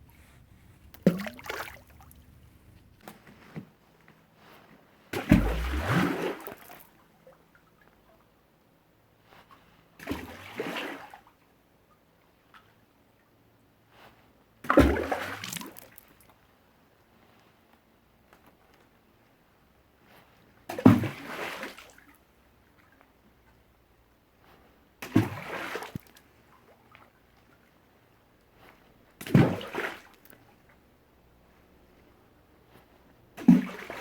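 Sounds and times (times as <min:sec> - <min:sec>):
water splashing: 0:00.0 - 0:03.0
stones plunking into water: 0:00.2 - 0:02.9.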